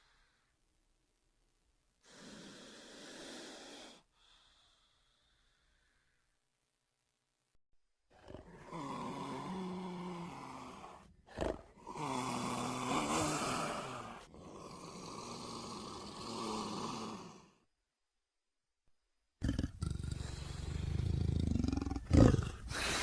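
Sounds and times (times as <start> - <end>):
breathy creature growl: 8.1 - 17.6, 19.4 - 23.0.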